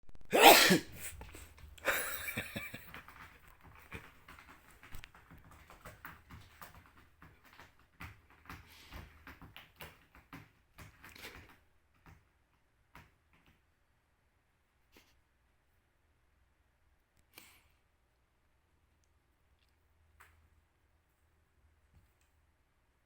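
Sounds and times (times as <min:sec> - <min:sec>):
person sneezing: 0:00.3 - 0:01.2
cat paws scrambling: 0:01.0 - 0:12.3.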